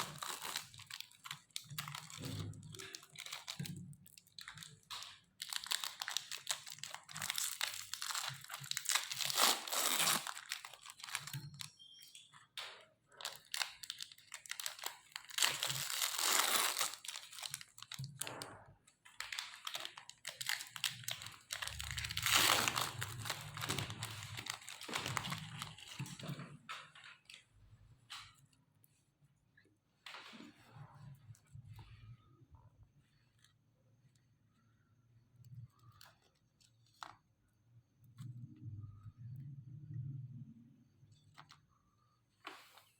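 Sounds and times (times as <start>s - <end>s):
meat grinder crunching wafer biscuits: 13.1s - 18.2s.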